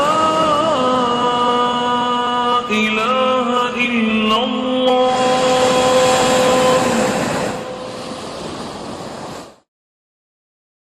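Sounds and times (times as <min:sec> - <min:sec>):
vocal chant holding a note: 0:00.0 - 0:08.0
steady rushing noise: 0:05.0 - 0:09.7.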